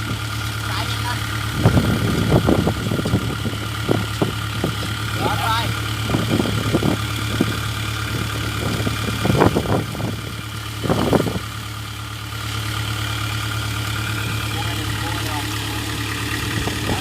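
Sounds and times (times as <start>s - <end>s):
combine harvester diesel engine: 0.0s - 17.0s.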